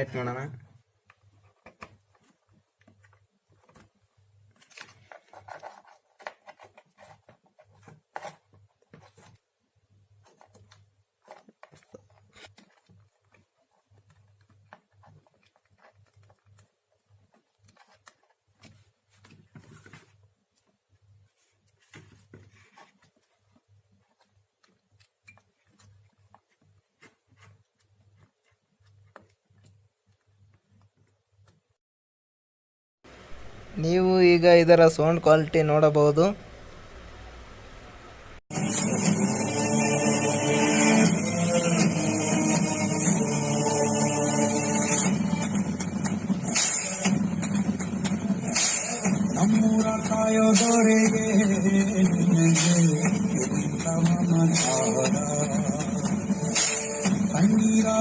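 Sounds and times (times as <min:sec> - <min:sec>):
low hum: 0:36.3 - 0:46.5.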